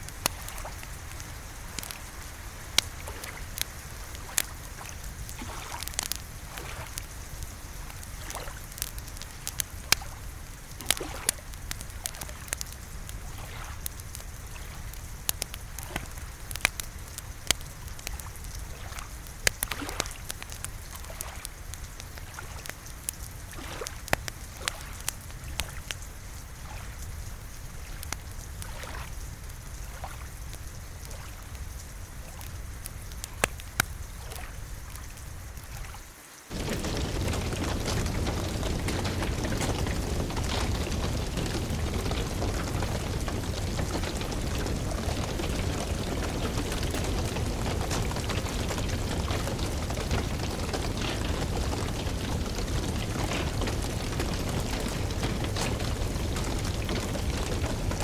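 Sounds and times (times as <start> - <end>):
wood fire crackling: 0.0 - 58.0
low rumble: 36.5 - 58.0.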